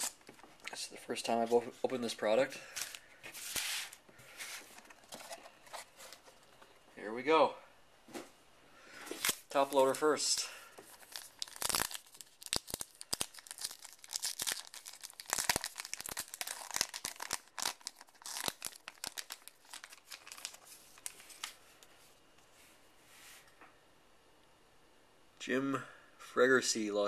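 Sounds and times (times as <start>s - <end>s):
wrapper tearing and crinkling: 0.0s - 0.2s, 10.9s - 21.6s.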